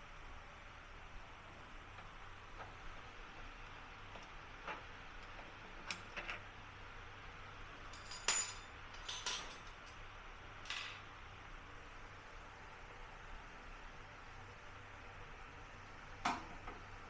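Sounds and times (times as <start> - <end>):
low steady hum: 0.0 - 17.0
metallic clinks of tools: 8.0 - 9.8.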